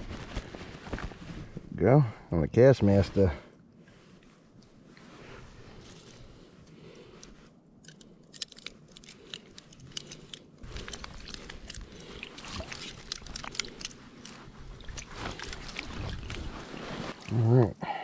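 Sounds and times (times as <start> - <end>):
crunching and crackling handling noises: 3.7 - 17.8.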